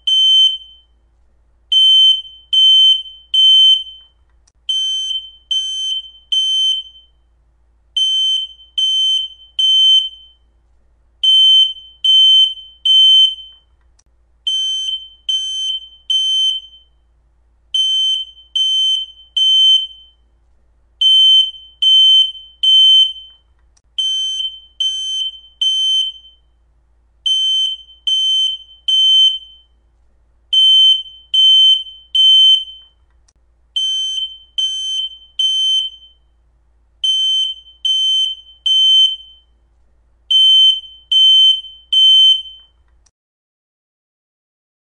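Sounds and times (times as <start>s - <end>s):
smoke alarm beeping: 0.0s - 1.0s, 1.7s - 7.2s, 8.0s - 10.5s, 11.2s - 13.8s, 14.5s - 17.0s, 17.8s - 20.3s, 21.0s - 26.6s, 27.3s - 29.8s, 30.5s - 33.0s, 33.8s - 36.3s, 37.0s - 39.6s, 40.3s - 42.8s.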